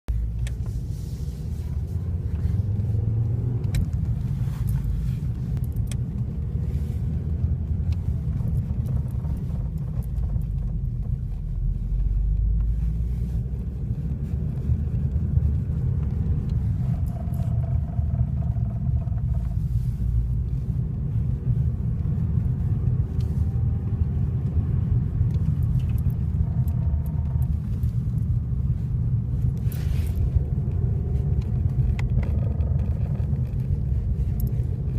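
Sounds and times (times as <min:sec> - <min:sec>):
car engine low rumble: 0:00.0 - 0:34.9.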